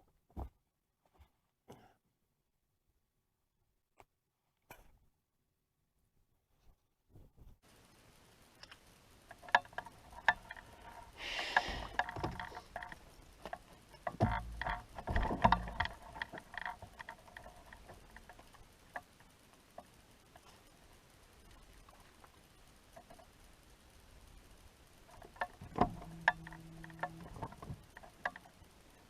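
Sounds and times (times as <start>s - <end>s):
short hiss: 11.1s - 12.7s
low thumps: 14.1s - 16.2s.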